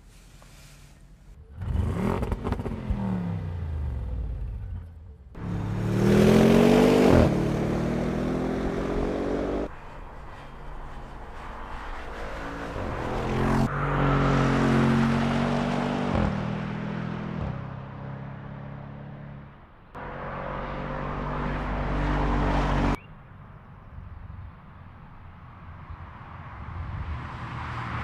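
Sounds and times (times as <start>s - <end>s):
car engine revving: 5.4s - 9.7s.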